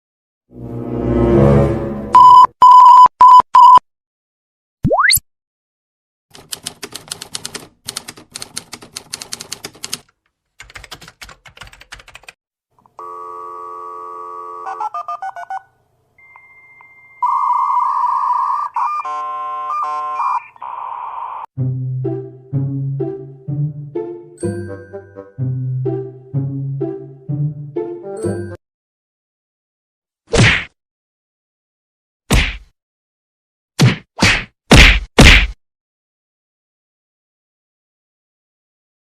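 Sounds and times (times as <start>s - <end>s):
rapid clattering keystrokes: 6.3s - 12.4s.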